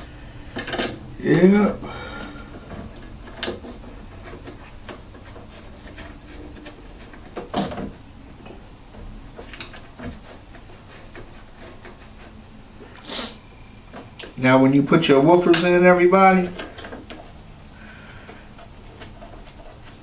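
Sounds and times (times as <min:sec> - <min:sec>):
knocks and clicks of handling: 0:00.6 - 0:01.0, 0:02.2 - 0:12.3, 0:16.5 - 0:17.4.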